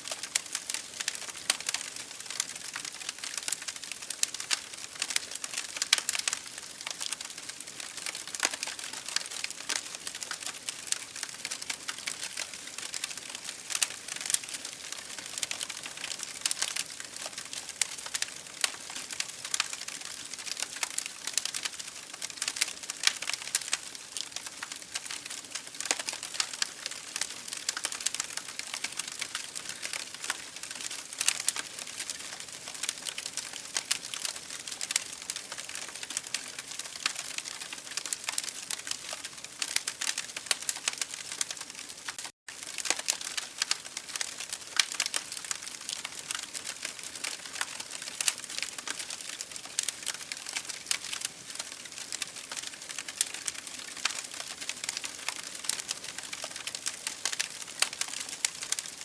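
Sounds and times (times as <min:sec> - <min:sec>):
soft steady hiss: 0:00.0 - 0:51.8
wood fire crackling and popping: 0:00.1 - 0:59.0.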